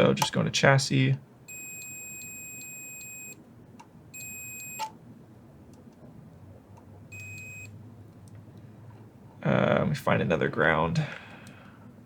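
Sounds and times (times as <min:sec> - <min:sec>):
multimeter high beep: 0:01.5 - 0:03.4, 0:04.1 - 0:04.9, 0:07.1 - 0:07.8.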